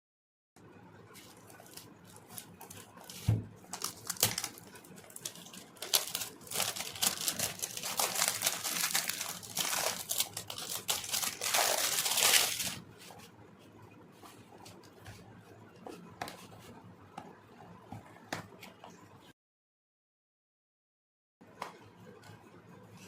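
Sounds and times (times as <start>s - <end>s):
packaging crinkling and rustling: 1.1s - 12.9s.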